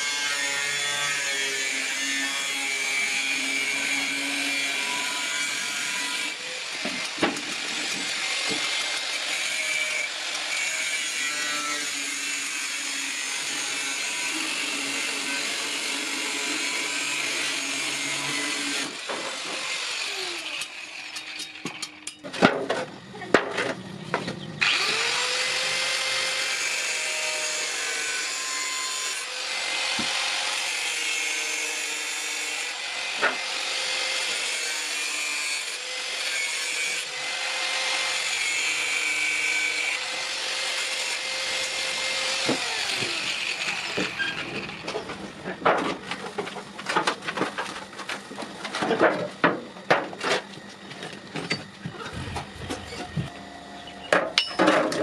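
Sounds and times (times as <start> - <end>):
power tool running: 24.6 - 45.0.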